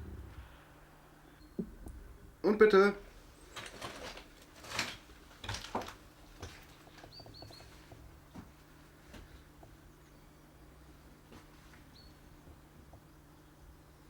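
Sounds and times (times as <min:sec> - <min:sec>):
faint low hum: 0:00.0 - 0:14.0.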